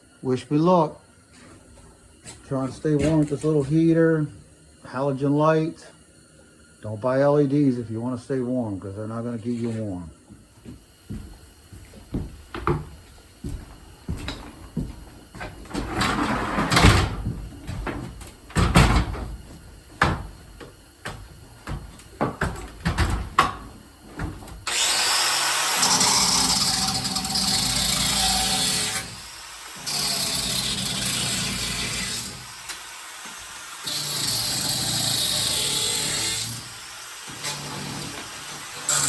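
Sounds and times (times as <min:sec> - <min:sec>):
grinder grinding nails: 0:11.1 - 0:39.0
knocks and clatter: 0:15.4 - 0:24.6.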